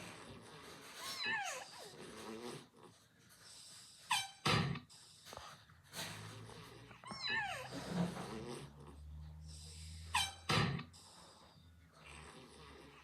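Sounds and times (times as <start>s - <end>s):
pet snoring with whistle and snort: 0.0s - 13.0s.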